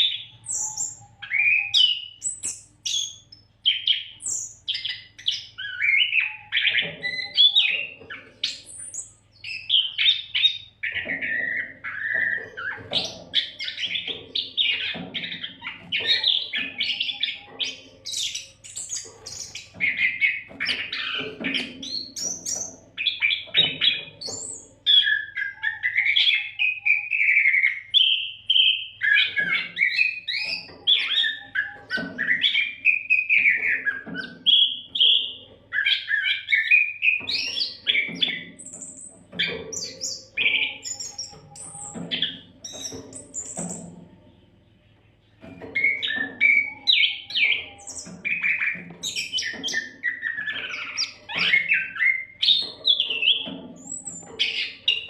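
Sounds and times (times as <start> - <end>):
bird singing varied whistles: 0.0 - 7.7.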